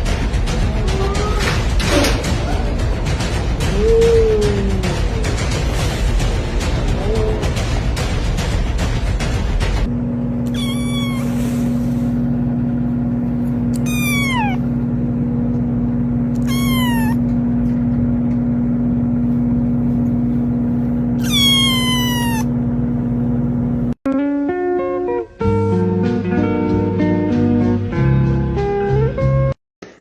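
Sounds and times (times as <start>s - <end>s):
cat meowing: 10.5s - 11.7s, 13.8s - 14.7s, 16.4s - 17.2s, 21.2s - 22.5s.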